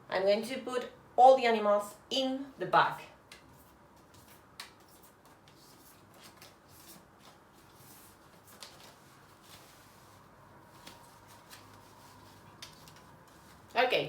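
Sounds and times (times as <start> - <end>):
cards rustling and ticking: 3.3 - 9.9, 10.7 - 13.8.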